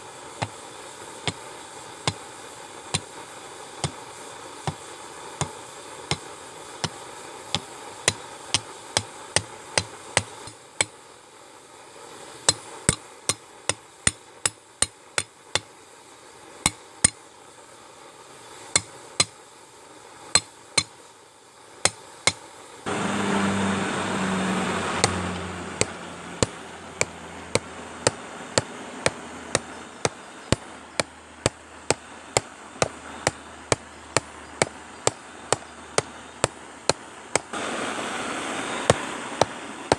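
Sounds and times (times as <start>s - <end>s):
hammer striking steel on anvil: 6.8s - 11.0s, 12.5s - 15.7s, 16.6s - 17.2s, 18.7s - 19.4s, 25.0s - 37.6s
rushing noise with low hum: 22.9s - 39.9s.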